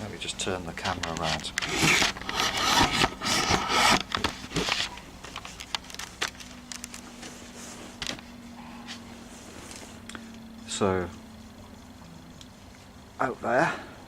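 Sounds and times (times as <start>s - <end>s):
camcorder handling rustling: 0.9s - 7.0s.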